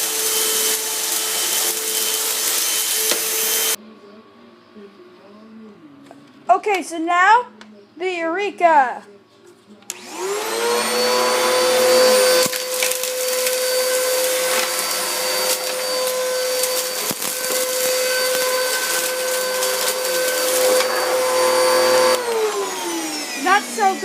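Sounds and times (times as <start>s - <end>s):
vacuum cleaner whining: 0.0s - 3.8s, 9.9s - 24.0s.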